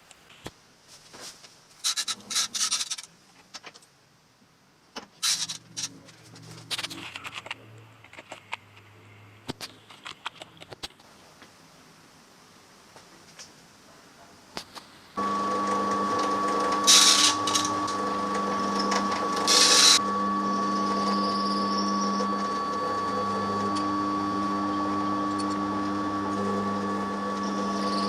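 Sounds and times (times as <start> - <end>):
metal scraping bursts: 15.2 - 28.0
milling machine hum: 15.2 - 28.0.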